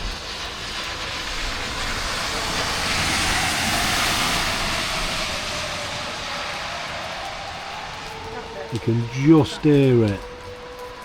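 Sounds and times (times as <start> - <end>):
tyres hissing as vehicle passes: 0.0 - 8.6
distant air-raid siren: 0.0 - 11.0.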